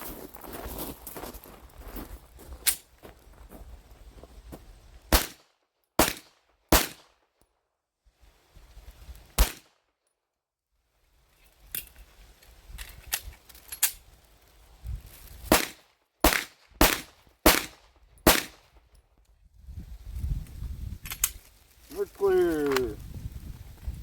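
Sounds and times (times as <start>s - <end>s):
loud pistol shots: 5.1s - 5.4s, 6.0s - 7.1s, 9.4s - 9.7s, 15.5s - 18.6s.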